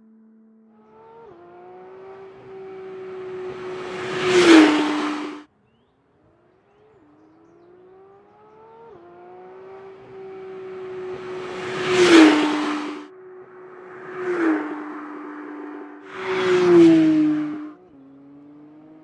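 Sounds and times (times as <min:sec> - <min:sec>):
car engine accelerating: 0:00.8 - 0:05.5, 0:07.0 - 0:19.0
loud rushes of noise: 0:10.6 - 0:17.8.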